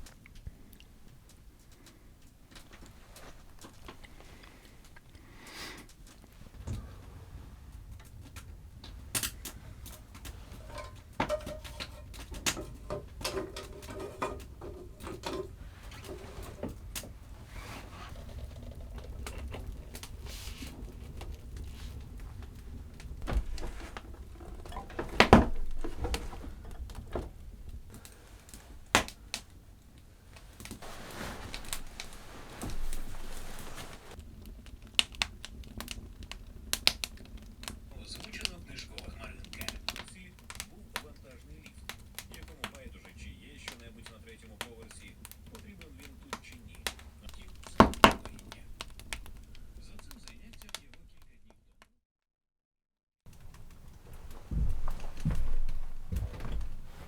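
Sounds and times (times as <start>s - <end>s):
objects clicking and knocking: 8.0s - 29.5s, 46.8s - 51.0s.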